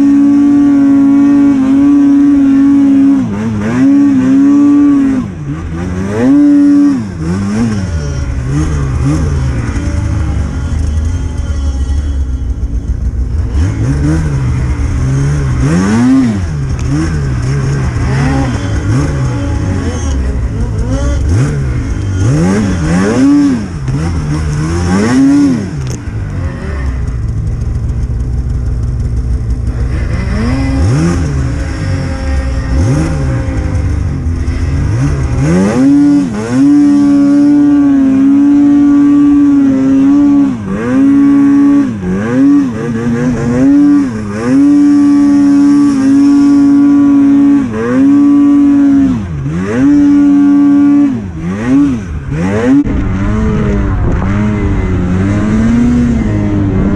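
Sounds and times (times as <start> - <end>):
snowmobile engine revving: 0.0 - 56.9.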